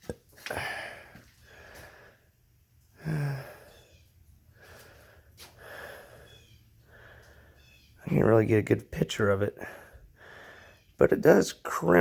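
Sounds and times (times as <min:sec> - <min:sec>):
man breathing and sighing: 0:00.2 - 0:07.8, 0:09.5 - 0:11.0
man humming or grunting low: 0:03.0 - 0:03.6.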